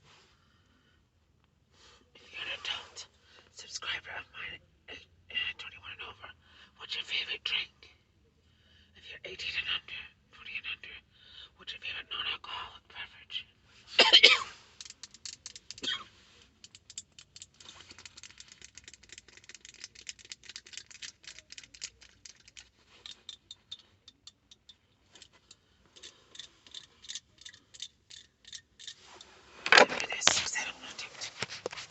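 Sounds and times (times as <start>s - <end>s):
fingers tapping and clicking: 16.6s - 24.8s.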